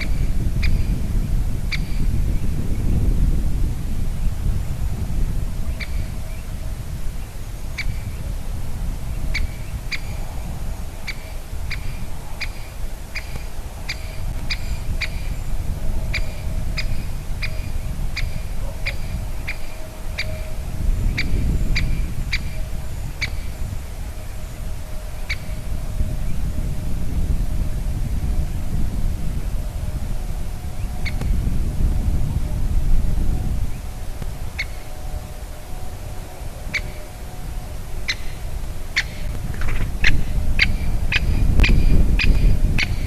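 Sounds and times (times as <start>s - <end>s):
woodpecker sharp kik calls: 11.1s - 15.3s.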